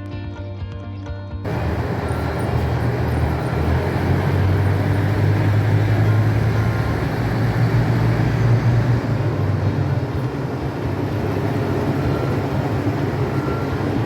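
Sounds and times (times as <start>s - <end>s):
diesel railcar engines droning: 1.4s - 14.0s.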